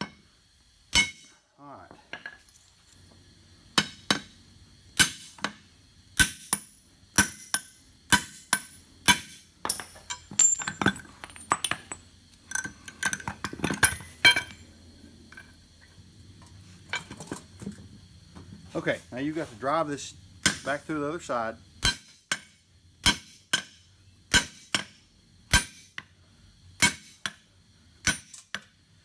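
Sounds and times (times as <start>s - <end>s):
hammer striking metal: 0.9s - 1.3s
light metal clinks: 9.6s - 14.6s.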